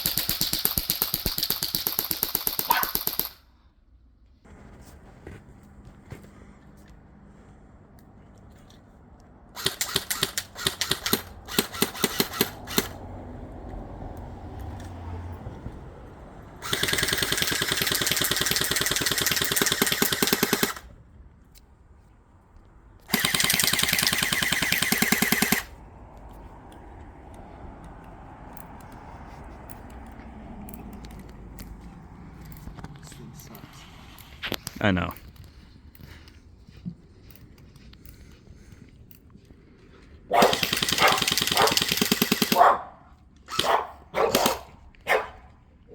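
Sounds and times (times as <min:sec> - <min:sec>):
airsoft rifle firing: 0:00.0 - 0:03.4, 0:09.6 - 0:13.0, 0:16.6 - 0:20.9, 0:23.1 - 0:25.8, 0:40.3 - 0:42.8, 0:43.5 - 0:44.8.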